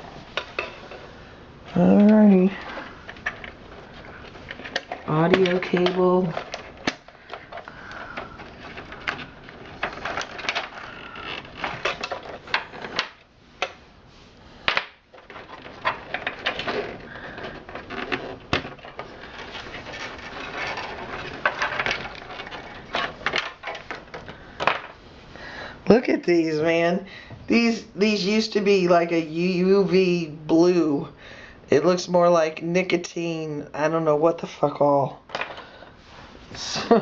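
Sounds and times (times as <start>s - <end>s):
rustling: 0.0s - 26.9s.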